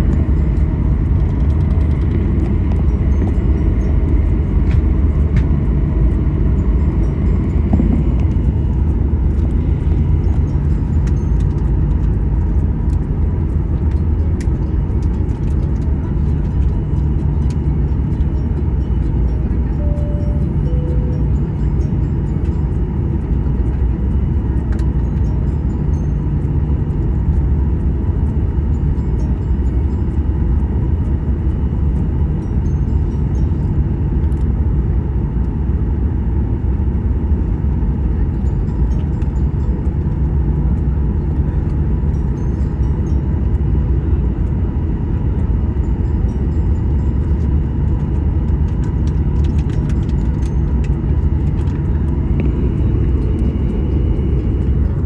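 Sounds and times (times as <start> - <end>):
constant hum: 0.0 - 55.0
jet engine cabin drone: 0.0 - 55.0.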